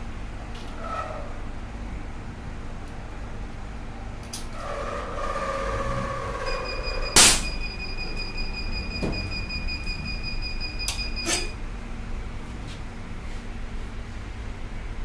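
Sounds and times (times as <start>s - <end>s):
steady low hum: 0.0s - 15.0s
steady high tone: 5.8s - 11.6s.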